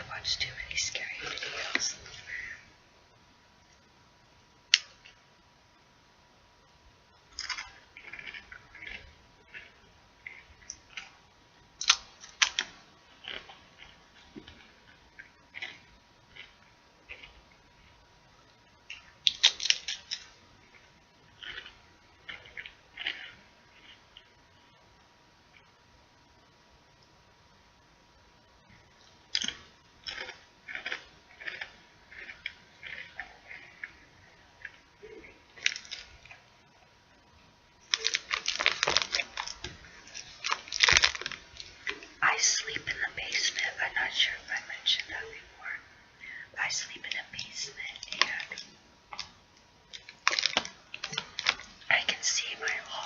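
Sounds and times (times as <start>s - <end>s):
bag of chips crackling: 7.3s - 8.6s, 18.9s - 20.3s, 35.6s - 36.4s, 37.8s - 42.2s, 47.4s - 53.0s.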